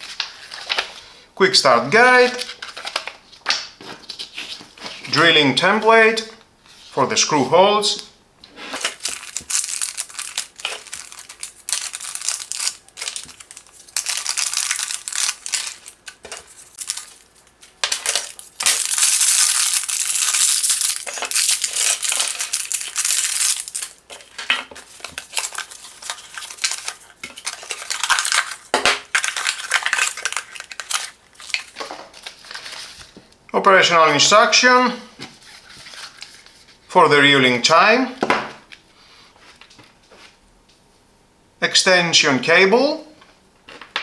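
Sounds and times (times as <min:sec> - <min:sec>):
paper and plastic packaging rustling: 0:00.0 - 0:07.7, 0:08.5 - 0:33.4, 0:35.2 - 0:36.9.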